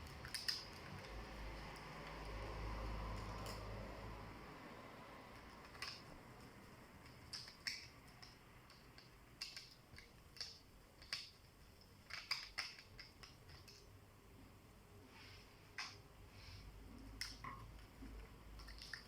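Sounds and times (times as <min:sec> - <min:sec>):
small clicks and taps of tools: 0:05.3 - 0:13.9, 0:15.7 - 0:16.0, 0:17.0 - 0:19.0.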